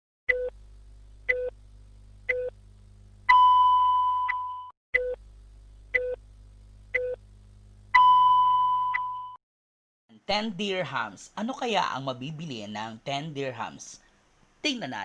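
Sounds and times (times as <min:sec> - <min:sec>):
short countdown beeps: 0:00.3 - 0:00.5, 0:03.3 - 0:05.2, 0:08.0 - 0:09.4
faint steady hum: 0:00.3 - 0:09.3, 0:10.1 - 0:15.0.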